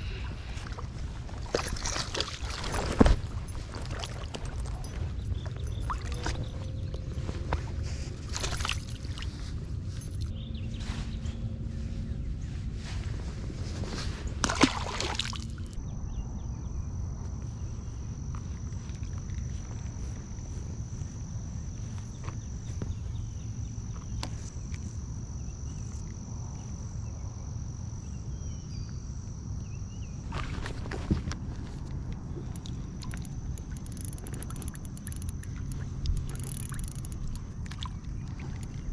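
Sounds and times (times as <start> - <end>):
gear handling noises: 1.2 - 10.3, 30.3 - 38.9
thin high whine: 2.4 - 38.9.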